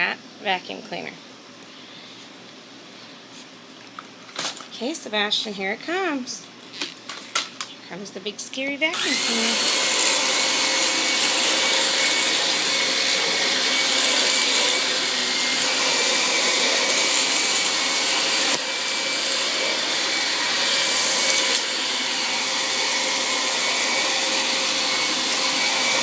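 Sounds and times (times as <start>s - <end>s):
vacuum cleaner running: 7.9s - 26.0s.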